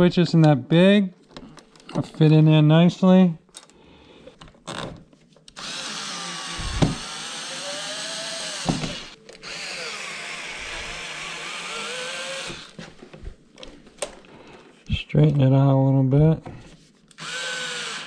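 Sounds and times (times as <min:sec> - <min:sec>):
cordless drill driving screws: 0:05.5 - 0:12.8, 0:17.2 - 0:18.0.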